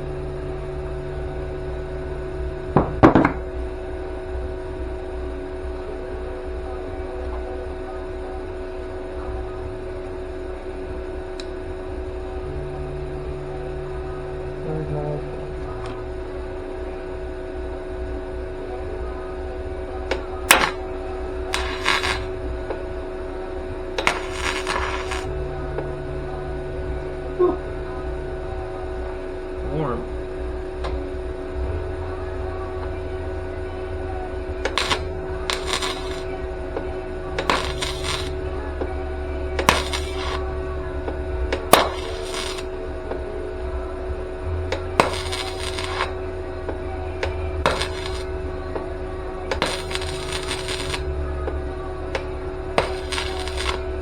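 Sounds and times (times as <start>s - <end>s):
steady electrical hum: 0.0s - 54.0s
crackling welding: 19.8s - 25.8s, 34.4s - 54.0s.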